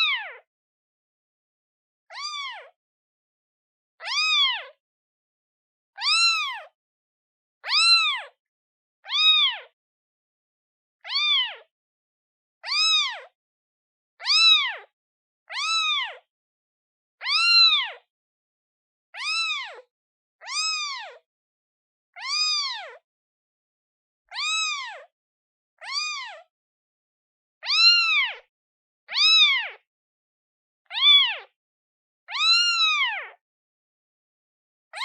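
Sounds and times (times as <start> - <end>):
kitten meowing: 0.0 - 0.4, 2.1 - 2.8, 4.0 - 4.8, 6.0 - 6.7, 7.6 - 8.4, 9.1 - 9.7, 11.0 - 11.7, 12.6 - 13.3, 14.2 - 14.9, 15.5 - 16.3, 17.2 - 18.1, 19.2 - 21.2, 22.2 - 23.0, 24.3 - 25.1, 25.8 - 26.4, 27.6 - 28.5, 29.1 - 29.8, 30.9 - 31.5, 32.3 - 33.4.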